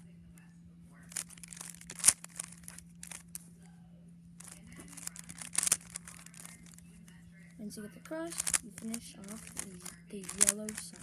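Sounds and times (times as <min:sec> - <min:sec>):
steady low hum: 0:00.0 - 0:11.0
cube plastic clicking and rattling: 0:01.1 - 0:03.5, 0:04.4 - 0:06.8, 0:08.3 - 0:11.0.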